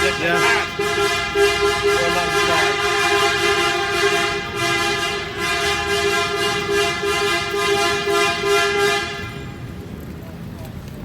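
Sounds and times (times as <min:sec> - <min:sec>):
coach horns honking: 0:00.0 - 0:09.7.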